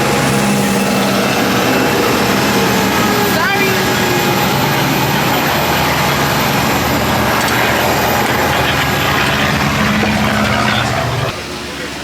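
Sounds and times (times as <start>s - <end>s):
jet engine rushing: 0.0s - 12.0s.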